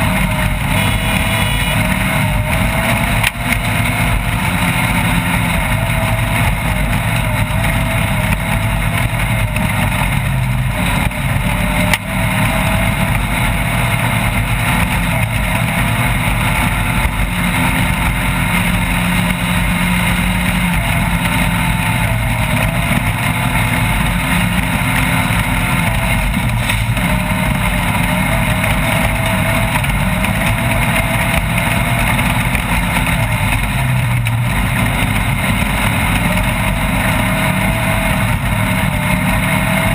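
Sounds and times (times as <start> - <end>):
constant rush of noise: 0.0 - 39.9
engine running under load: 0.0 - 39.9.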